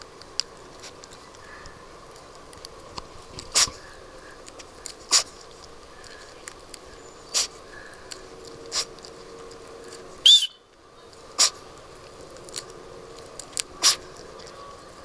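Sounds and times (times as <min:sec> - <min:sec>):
puppy sneezing: 0:05.1 - 0:05.4, 0:11.4 - 0:11.6.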